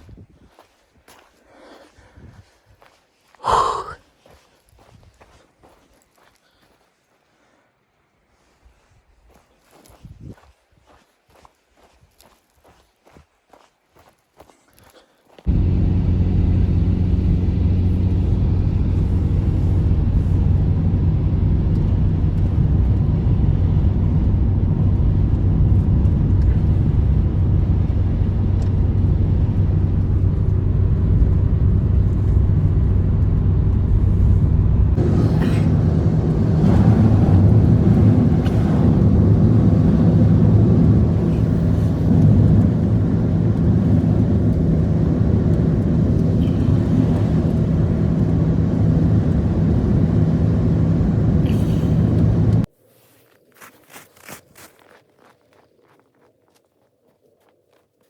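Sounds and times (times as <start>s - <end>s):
blizzard wind rumble: 0.0s - 4.0s, 15.4s - 52.7s.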